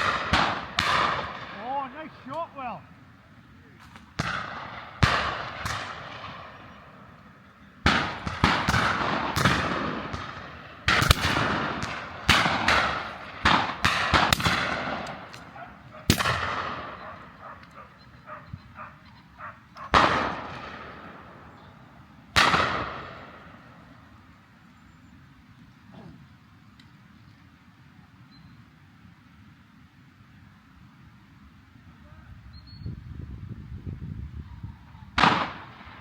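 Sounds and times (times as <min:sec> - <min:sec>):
shotguns firing with echo: 0:00.0 - 0:02.8, 0:03.8 - 0:07.1, 0:07.8 - 0:24.1, 0:35.2 - 0:36.0.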